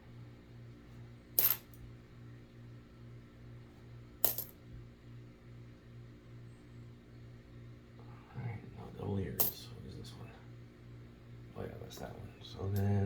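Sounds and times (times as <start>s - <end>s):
coins clinking on hard surface: 1.4s - 1.8s, 4.2s - 4.6s.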